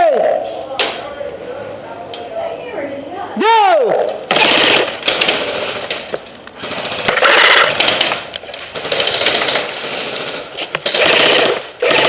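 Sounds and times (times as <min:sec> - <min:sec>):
airsoft guns firing full auto: 0:04.3 - 0:12.0.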